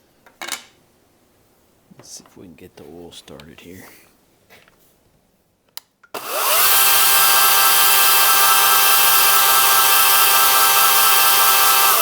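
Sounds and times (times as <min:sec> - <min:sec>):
electric chainsaw running: 0:06.2 - 0:12.0.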